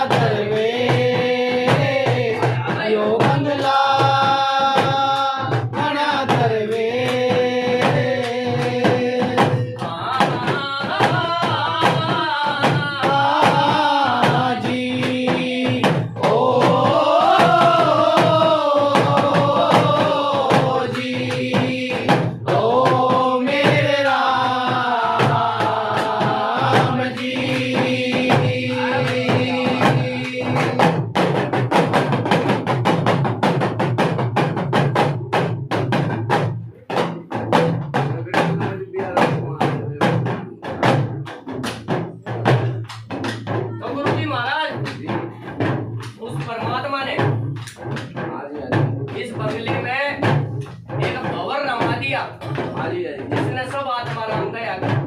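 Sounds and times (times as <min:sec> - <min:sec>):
person singing devotional song: 0:00.0 - 0:31.4
small hand drum strokes: 0:00.0 - 0:55.0.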